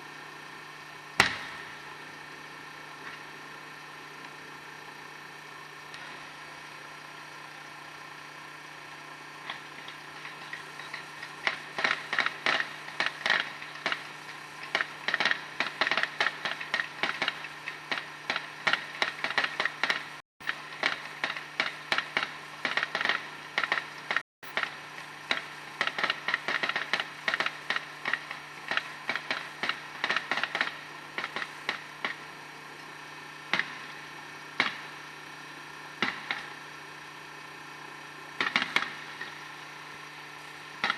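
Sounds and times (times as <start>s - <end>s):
steady low hum: 0.0s - 40.9s
fireworks crackling: 9.4s - 36.8s, 37.6s - 40.9s.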